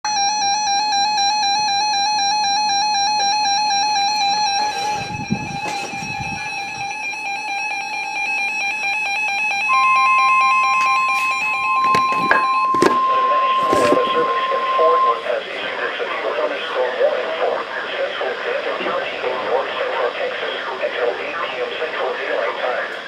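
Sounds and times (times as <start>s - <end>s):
pure steady warning alarm tone: 0.0s - 23.0s
steady buzzing tone: 0.2s - 17.0s.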